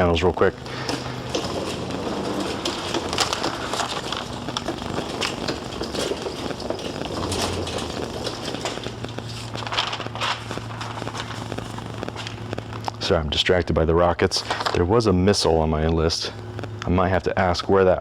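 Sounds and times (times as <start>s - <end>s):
shopping cart rattling: 0.0s - 12.4s.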